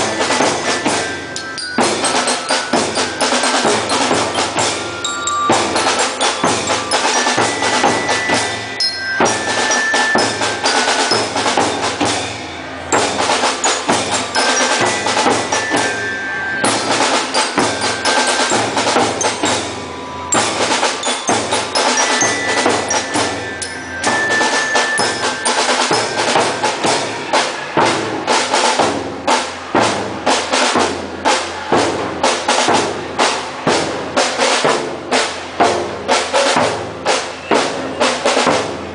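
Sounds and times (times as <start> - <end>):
bell-like mallet notes: 0.0 - 31.8
drums and percussion: 0.0 - 38.9
marching band playing: 0.0 - 38.9.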